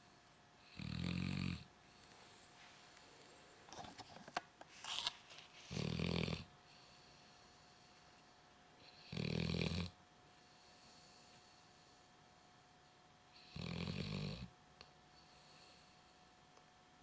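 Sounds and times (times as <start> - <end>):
dog snoring: 0.6 - 1.7, 5.7 - 6.5, 8.8 - 10.0, 13.4 - 14.5.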